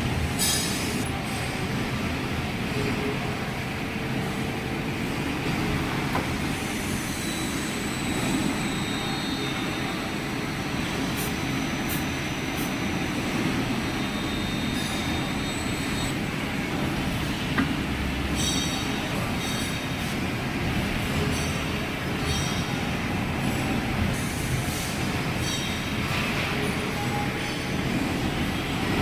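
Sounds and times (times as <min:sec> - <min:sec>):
metal lathe running: 0:06.6 - 0:20.0.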